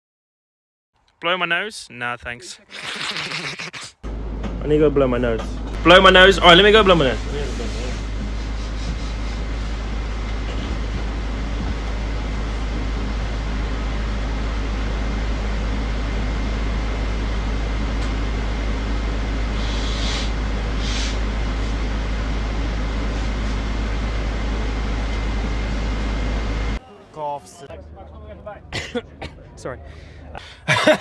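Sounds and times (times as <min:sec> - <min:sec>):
short hissing bursts: 0:19.5 - 0:21.2.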